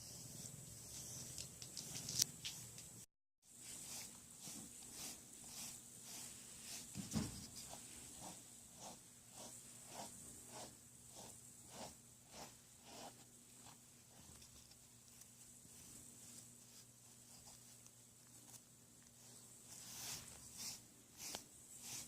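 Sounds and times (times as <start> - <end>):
brush rasping through fur: 3.6 - 14.4, 19.2 - 22.0
soft thump: 7.0 - 7.5.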